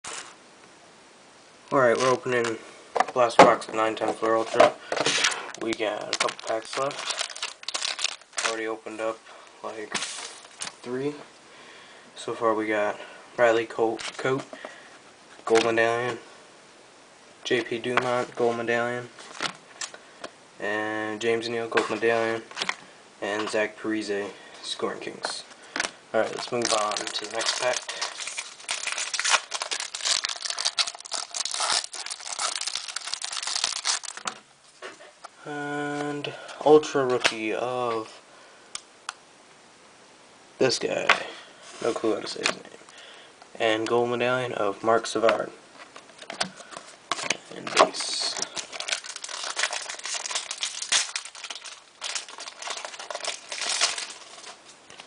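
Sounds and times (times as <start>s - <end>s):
wrapper tearing and crinkling: 4.4s - 8.6s, 26.2s - 34.4s, 46.2s - 55.0s
trading cards rustling and scraping: 9.9s - 10.8s, 19.2s - 20.0s, 25.7s - 35.3s, 45.8s - 55.0s.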